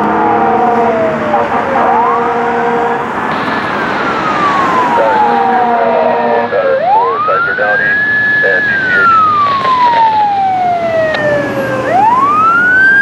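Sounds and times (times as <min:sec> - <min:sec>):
fire truck siren wailing: 0:00.0 - 0:13.0
air horn blasts: 0:01.4 - 0:03.9.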